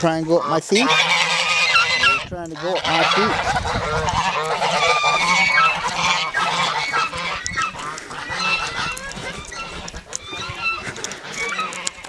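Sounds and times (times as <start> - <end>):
geese honking: 0.0 - 12.0.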